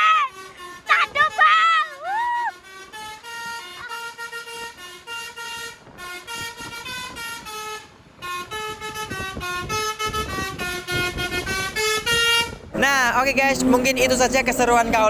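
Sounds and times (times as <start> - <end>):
multi-note bus air horn tune: 0.0 - 15.0.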